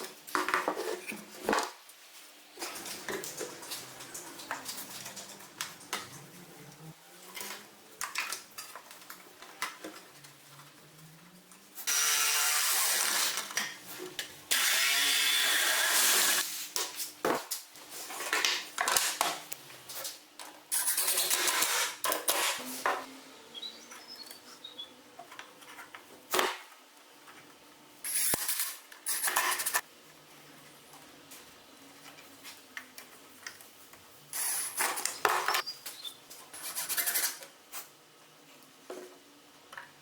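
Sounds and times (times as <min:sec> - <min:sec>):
handheld power tool running: 0:14.5 - 0:16.4.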